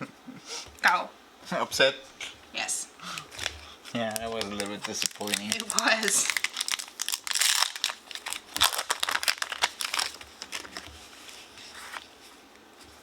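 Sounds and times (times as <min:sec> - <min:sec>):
foil wrapper crinkling: 0:03.2 - 0:12.0.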